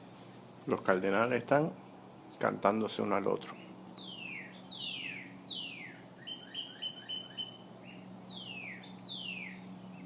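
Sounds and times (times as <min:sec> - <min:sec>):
cardinals whistling: 0:03.6 - 0:10.0
short bird chirps: 0:04.0 - 0:10.0.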